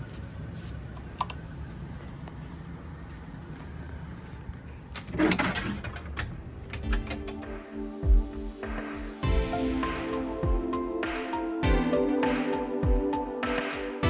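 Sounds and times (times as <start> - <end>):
music: 6.7 - 14.0.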